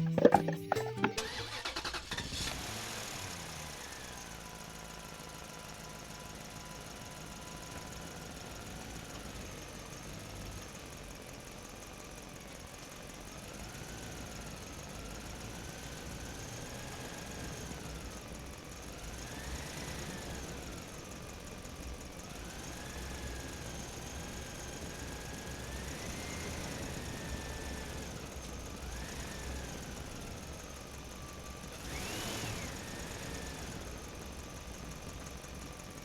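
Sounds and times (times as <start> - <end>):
toy truck motor whirring: 0.1 - 2.6, 31.8 - 34.0.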